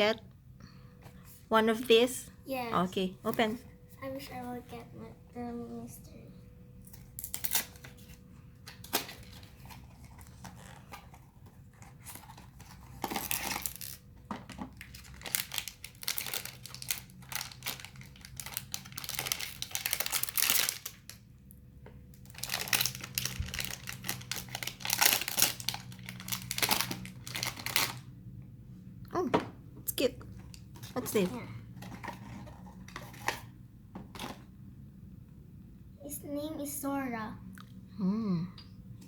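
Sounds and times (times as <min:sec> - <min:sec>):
wrapper crinkling and tearing: 0:07.0 - 0:21.2, 0:22.1 - 0:28.1.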